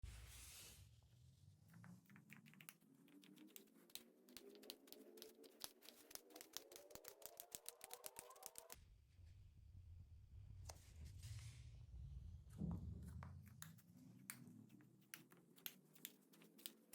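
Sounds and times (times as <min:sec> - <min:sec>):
slime clicking and crackling: 0:02.2 - 0:08.8, 0:13.6 - 0:16.9.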